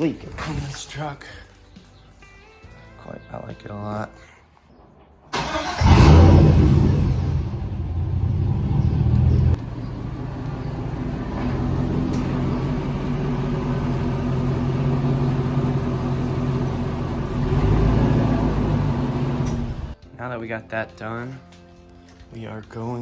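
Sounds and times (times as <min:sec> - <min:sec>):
pickup truck engine running: 0:05.5 - 0:20.0.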